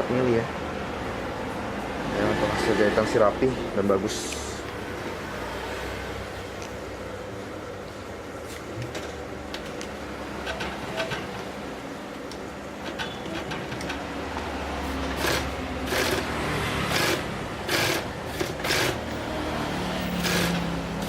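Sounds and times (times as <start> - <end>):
sewing machine motor hum: 14.9 - 21.0.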